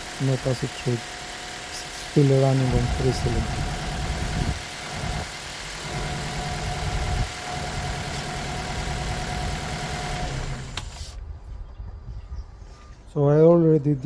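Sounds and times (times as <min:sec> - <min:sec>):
car engine idling rough: 0:00.0 - 0:10.9.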